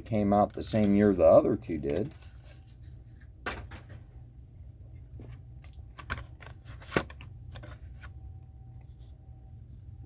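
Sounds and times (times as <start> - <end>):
card and plastic rustling: 0.0 - 4.1, 5.0 - 8.2.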